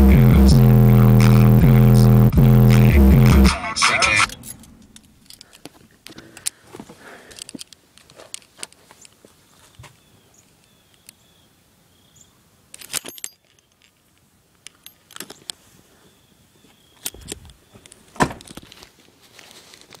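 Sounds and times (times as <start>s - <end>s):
metallic jingling and clicking: 4.3s - 5.7s, 12.8s - 15.6s.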